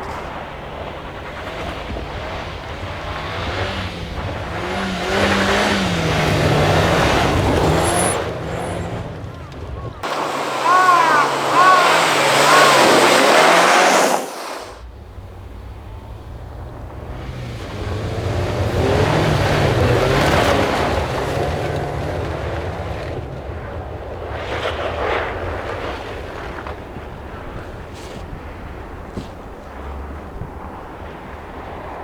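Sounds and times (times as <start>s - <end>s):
rally car engine: 0.0s - 32.0s
tyres hissing on snow: 10.0s - 14.8s.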